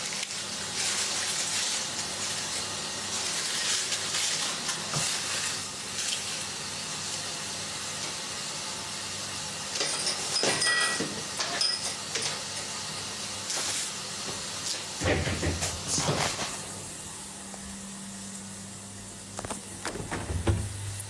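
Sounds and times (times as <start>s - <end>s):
short knocks: 19.0s - 21.0s.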